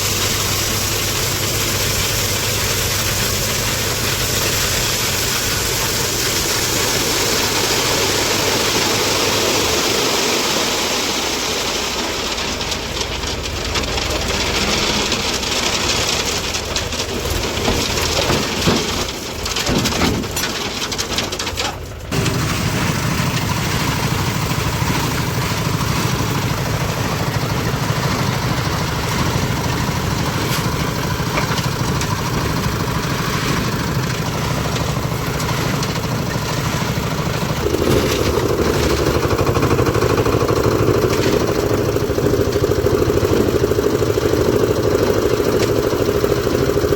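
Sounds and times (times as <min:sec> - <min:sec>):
diesel engine running: 0:00.0 - 0:46.9.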